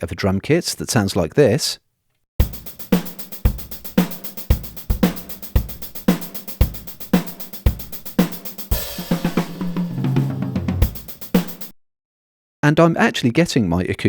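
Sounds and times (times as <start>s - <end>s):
quick drum fill: 2.4s - 11.7s
drum kit groove: 2.4s - 11.8s
cymbal wash: 2.6s - 11.7s.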